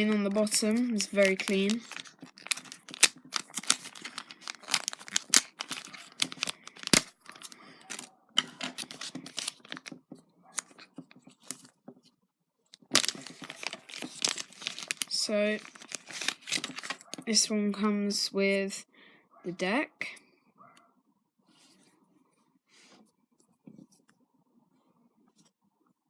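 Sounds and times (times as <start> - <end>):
plastic packaging crinkling: 0.0 - 11.8, 12.8 - 17.3.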